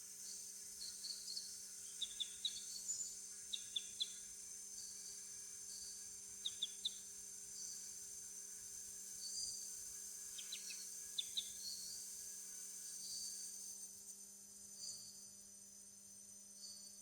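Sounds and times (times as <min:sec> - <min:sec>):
insects chorus: 0:00.2 - 0:13.2.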